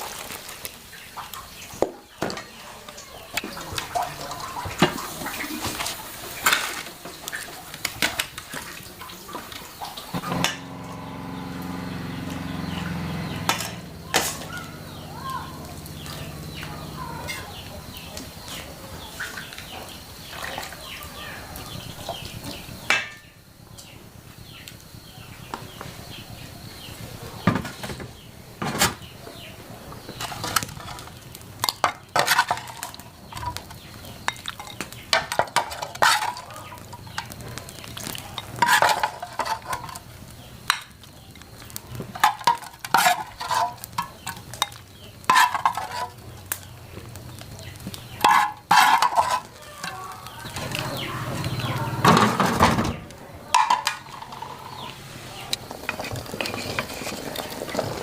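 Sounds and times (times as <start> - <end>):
metal pots and pans clattering: 1.2 - 10.8, 13.2 - 15.0, 22.1 - 23.3, 27.4 - 29.1, 30.0 - 41.1, 42.1 - 46.2, 48.2 - 54.9.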